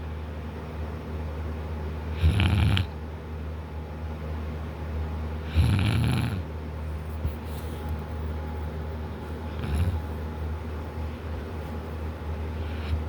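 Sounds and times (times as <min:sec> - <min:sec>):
man snoring: 0:02.2 - 0:02.9, 0:05.5 - 0:06.4, 0:09.6 - 0:10.0.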